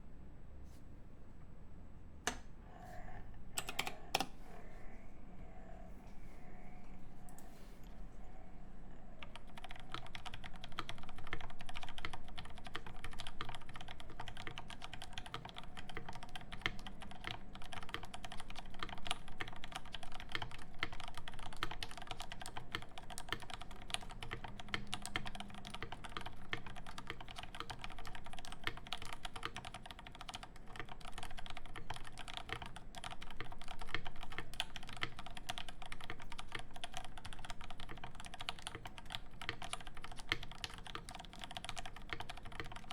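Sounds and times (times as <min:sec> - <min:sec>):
fast typing on mechanical keyboard: 0:09.2 - 0:42.9.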